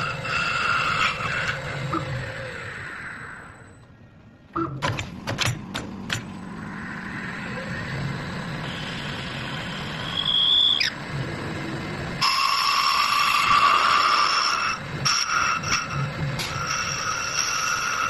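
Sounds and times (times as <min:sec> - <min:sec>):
lathe cutting wood: 0:00.0 - 0:02.6, 0:08.6 - 0:18.0
high whine: 0:00.0 - 0:04.8, 0:06.1 - 0:18.0.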